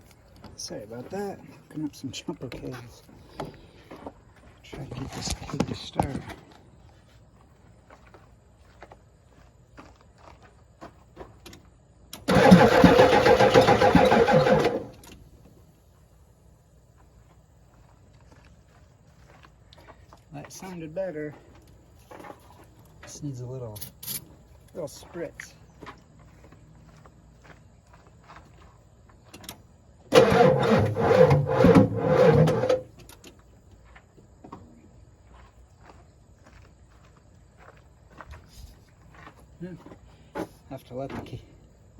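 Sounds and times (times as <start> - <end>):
diesel engine starter cranking: 12.2 - 15.3, 29.4 - 33.2.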